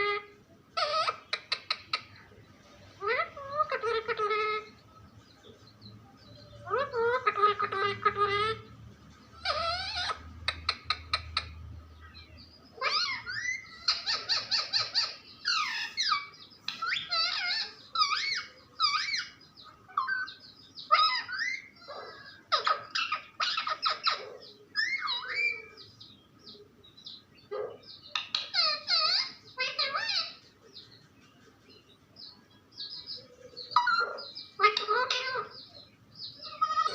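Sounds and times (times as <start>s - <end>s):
parrot chirping and whistling: 24.8s - 25.7s.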